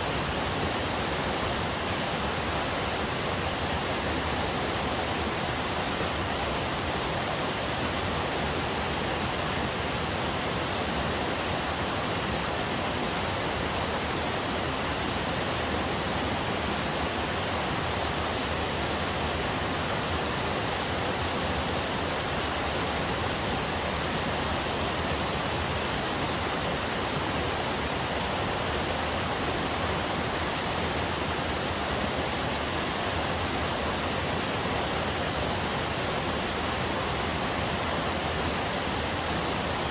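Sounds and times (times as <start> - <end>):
small waterfall rushing: 0.0 - 39.9.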